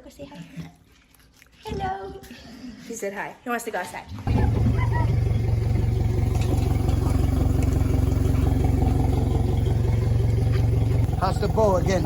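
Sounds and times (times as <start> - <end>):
outboard motors running: 4.3 - 12.0.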